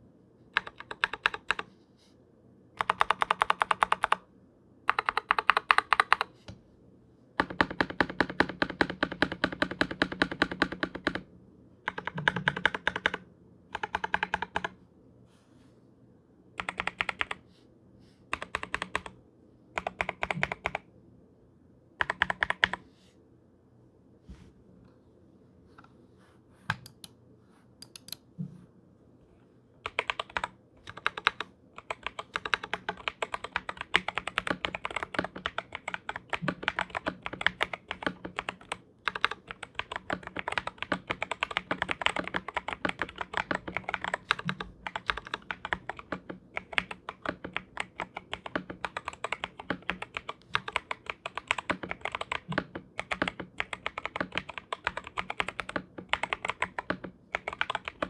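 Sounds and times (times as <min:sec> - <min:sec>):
mechanical keyboard typing: 0:00.6 - 0:01.7, 0:02.8 - 0:04.2, 0:04.9 - 0:06.3, 0:07.4 - 0:11.3, 0:11.9 - 0:14.8, 0:16.6 - 0:17.4, 0:18.3 - 0:19.2, 0:19.8 - 0:20.8, 0:22.0 - 0:22.8, 0:27.8 - 0:28.2, 0:29.8 - 0:58.0.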